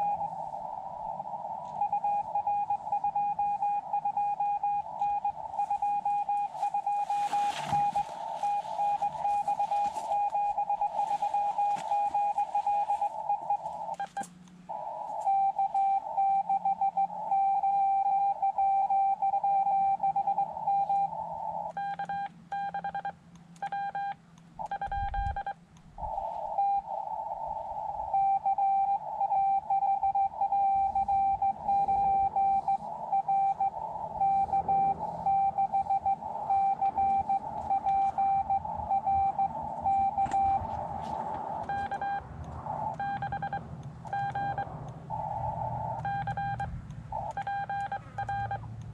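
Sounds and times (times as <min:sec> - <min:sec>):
morse code beeping: 0:00.0 - 0:48.9
receiver hiss: 0:04.6 - 0:16.1.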